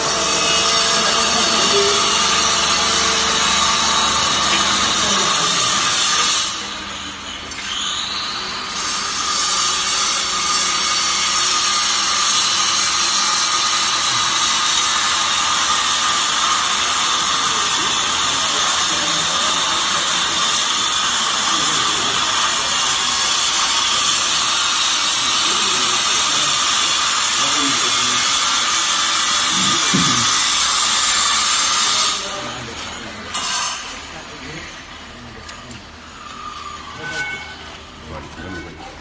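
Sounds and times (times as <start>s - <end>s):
faint machinery whine: 0.0s - 39.0s
baler machinery hissing: 23.1s - 31.8s.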